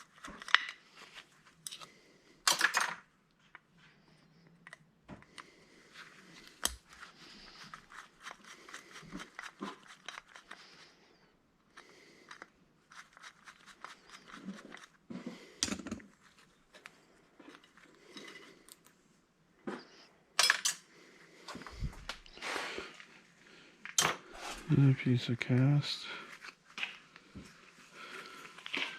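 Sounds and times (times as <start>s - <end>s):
metal parts clicking and clinking: 20.4s - 20.8s.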